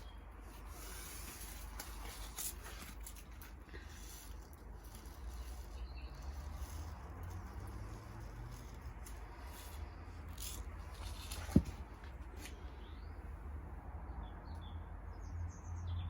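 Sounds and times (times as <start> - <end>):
rustling and pattering of seeds: 0.0 - 12.9.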